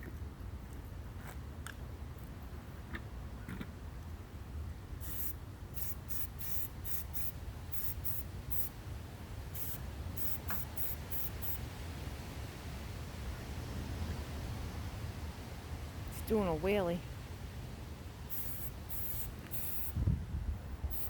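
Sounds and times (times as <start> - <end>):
spray-paint can hissing: 5.0 - 8.7, 9.5 - 11.6, 18.3 - 20.0.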